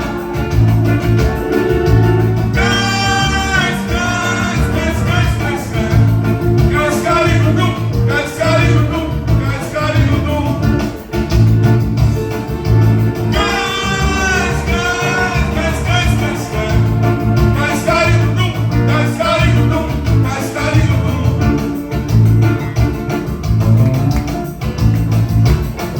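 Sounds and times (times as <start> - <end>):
live band music: 0.0 - 25.9
person singing: 2.5 - 10.7, 13.3 - 21.9.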